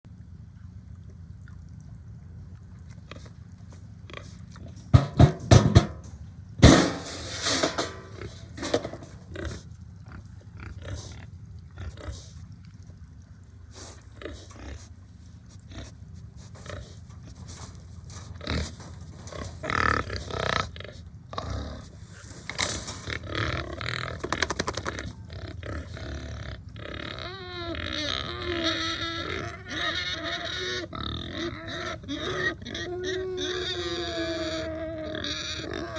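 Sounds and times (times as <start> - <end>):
pigs grunting and squealing: 6.6 - 12.6, 13.7 - 35.9.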